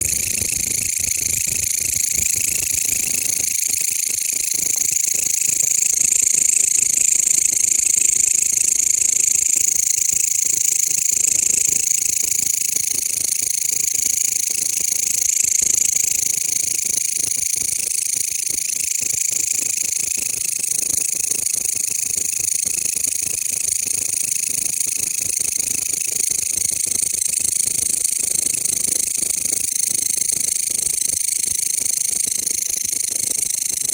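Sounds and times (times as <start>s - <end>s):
bush cricket buzzing: 0.0s - 20.3s.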